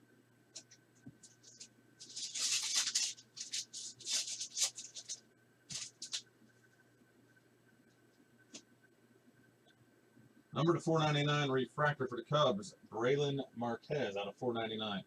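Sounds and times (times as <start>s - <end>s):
trading cards rustling and sliding: 0.6s - 6.3s.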